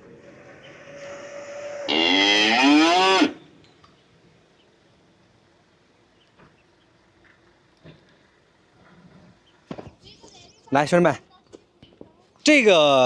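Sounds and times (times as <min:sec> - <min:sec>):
cow moo sound effect: 0:00.4 - 0:03.4.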